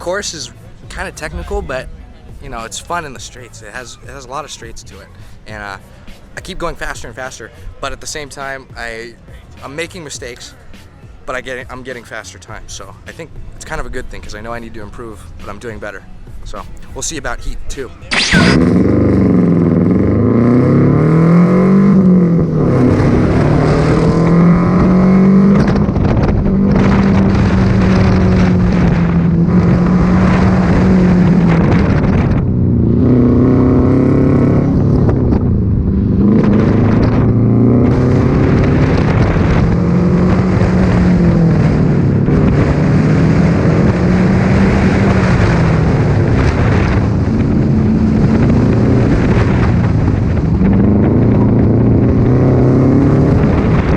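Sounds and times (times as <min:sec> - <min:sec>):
car engine revving: 0:00.0 - 0:08.0, 0:18.0 - 0:53.9.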